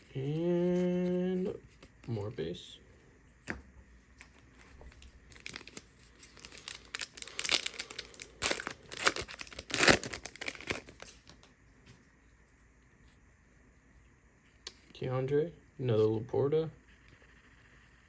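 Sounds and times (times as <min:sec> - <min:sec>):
foil wrapper crinkling and tearing: 0:04.2 - 0:11.4.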